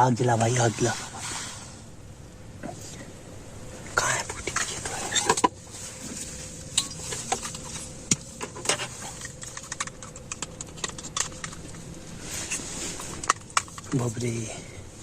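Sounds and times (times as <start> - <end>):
faint low hum: 0.0 - 15.0
sharp clicks and crackles: 6.8 - 14.1.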